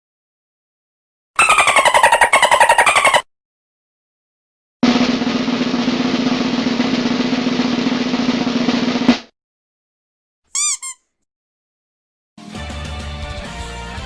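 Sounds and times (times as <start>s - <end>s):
snare drum roll: 4.8s - 9.3s.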